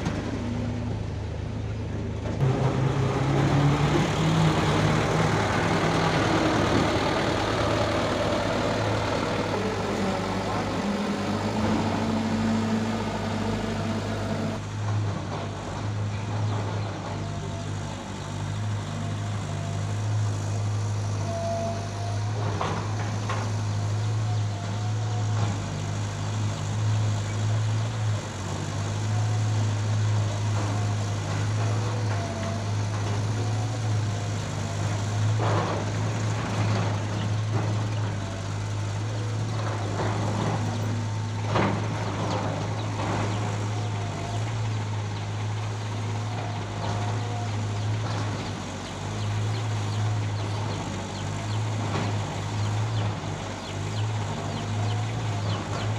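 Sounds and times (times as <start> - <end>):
excavator diesel engine droning: 0.0 - 55.9.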